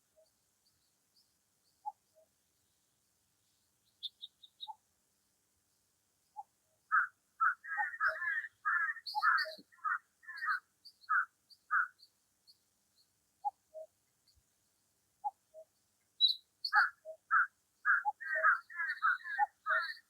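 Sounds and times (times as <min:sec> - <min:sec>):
loud repeated bird calls: 0:03.8 - 0:04.8, 0:06.4 - 0:12.2, 0:15.2 - 0:20.0
short high bird chirps: 0:16.2 - 0:20.0.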